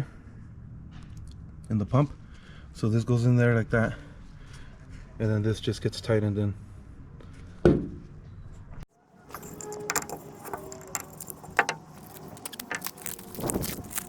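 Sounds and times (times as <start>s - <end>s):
small clicks taps and rattling: 9.4s - 12.8s.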